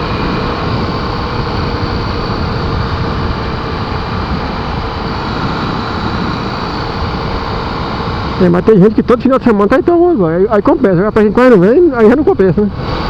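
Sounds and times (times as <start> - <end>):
wind on microphone: 0.0 - 8.5
motorcycle engine running: 0.0 - 13.0.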